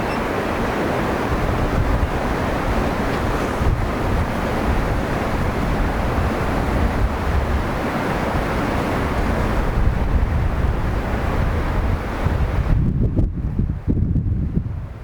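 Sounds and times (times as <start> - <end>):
sea surf washing on shore: 0.0 - 15.0
wind buffeting microphone: 0.0 - 15.0.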